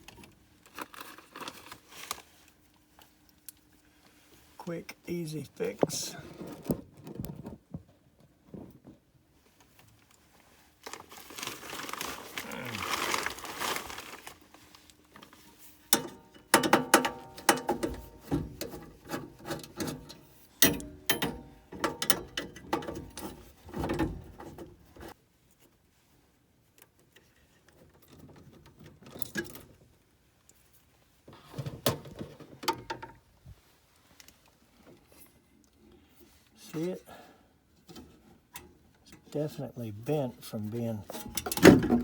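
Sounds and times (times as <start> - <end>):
metal parts clicking and clinking: 19.6 - 23.3.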